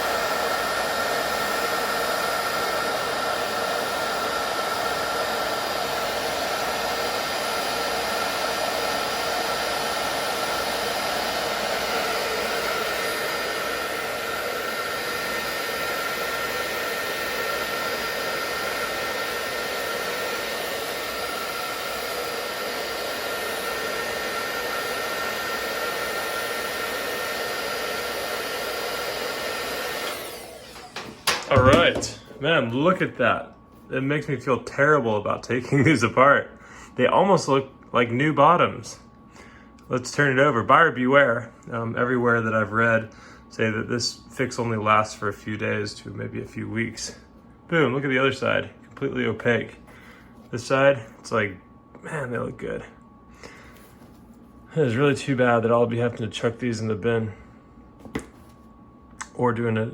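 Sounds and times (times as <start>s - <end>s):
hair dryer blowing: 0.0s - 33.6s.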